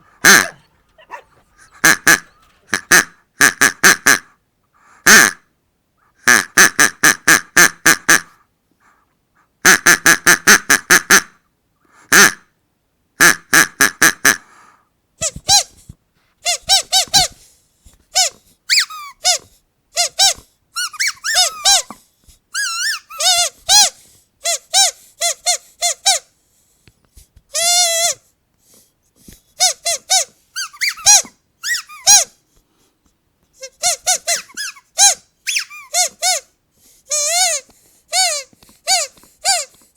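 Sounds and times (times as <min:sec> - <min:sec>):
squeaky dog toys squeaking: 0:00.2 - 0:03.0, 0:16.4 - 0:17.4, 0:18.1 - 0:26.3, 0:27.5 - 0:28.2, 0:29.6 - 0:32.4, 0:33.6 - 0:39.9.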